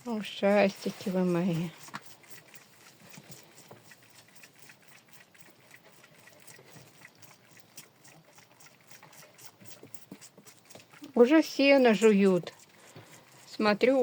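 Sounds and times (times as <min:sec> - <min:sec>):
goats nibbling hay clicks: 0:00.0 - 0:14.0
goats rustling in hay: 0:00.1 - 0:03.9.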